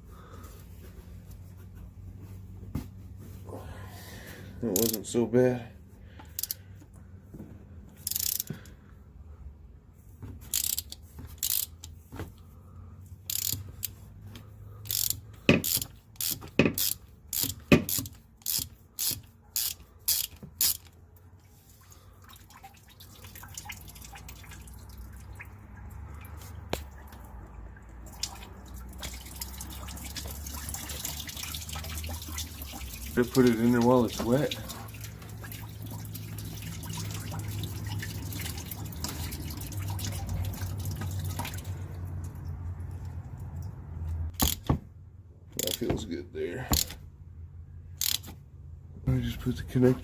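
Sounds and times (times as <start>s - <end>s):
ratchet wrench clicking: 4.8s - 5.1s, 6.3s - 6.6s, 8.0s - 8.6s, 10.5s - 12.0s, 13.3s - 14.0s, 14.8s - 20.9s, 44.4s - 44.7s, 45.6s - 45.8s, 46.7s - 47.0s, 48.0s - 48.4s
coolant dripping into a bucket: 21.3s - 44.2s.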